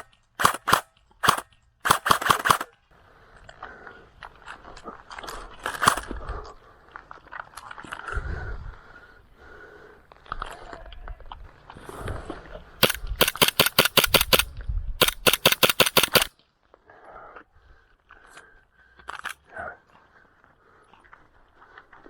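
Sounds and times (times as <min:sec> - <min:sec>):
airsoft gun rapid shots: 0:00.0 - 0:02.7, 0:05.7 - 0:06.0, 0:12.8 - 0:16.3.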